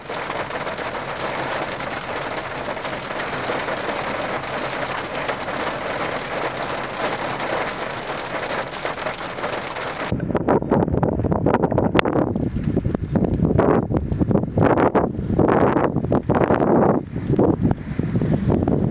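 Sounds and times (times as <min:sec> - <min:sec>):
heavy rain falling: 0:00.0 - 0:10.1
wind buffeting microphone: 0:00.0 - 0:18.9.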